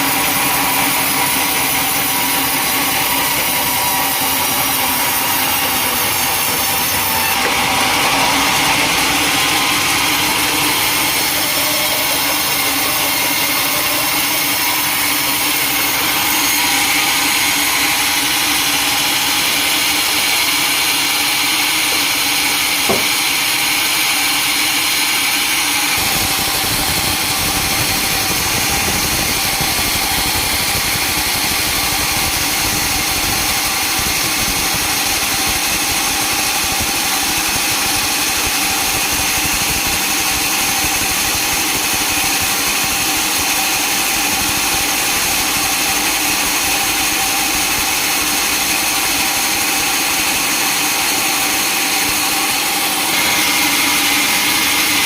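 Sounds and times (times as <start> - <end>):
high mechanical whine: 0.0 - 25.0, 25.6 - 35.2
sawmill machinery running: 0.0 - 55.0.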